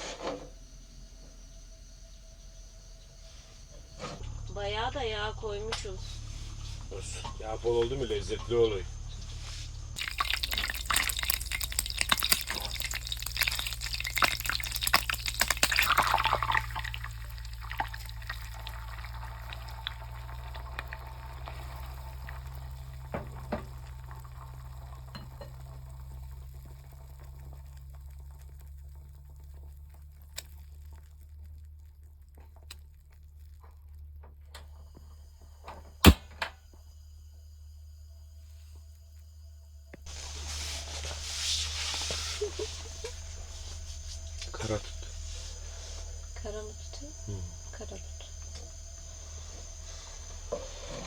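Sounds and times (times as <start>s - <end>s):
low steady hum: 0.0s - 51.0s
food sizzling in oil: 10.0s - 29.6s, 40.0s - 51.0s.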